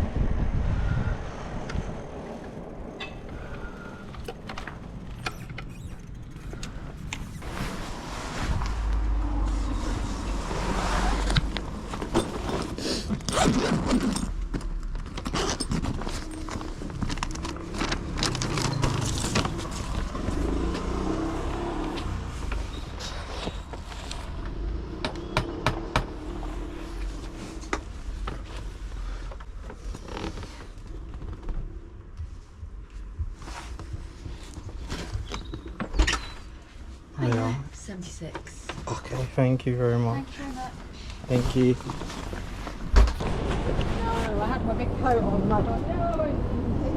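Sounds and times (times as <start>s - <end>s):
low traffic rumble: 0.0s - 46.9s
clicks rattles and scrapes: 11.0s - 20.8s.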